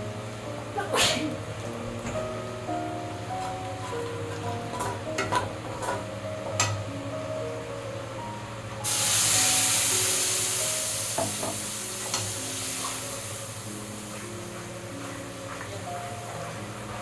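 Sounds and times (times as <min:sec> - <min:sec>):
soft background music: 0:00.0 - 0:17.0
food sizzling in hot oil: 0:08.8 - 0:17.0.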